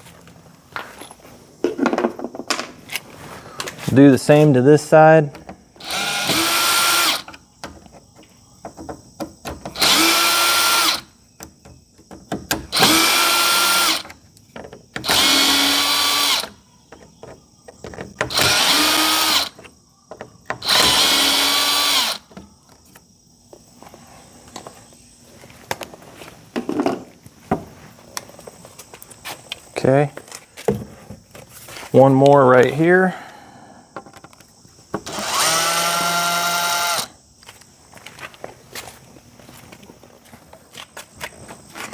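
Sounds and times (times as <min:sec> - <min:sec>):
power drill whining: 0:05.8 - 0:07.4, 0:09.7 - 0:11.1, 0:12.7 - 0:14.1, 0:15.0 - 0:16.6, 0:18.3 - 0:19.6, 0:20.6 - 0:22.2, 0:35.0 - 0:37.2.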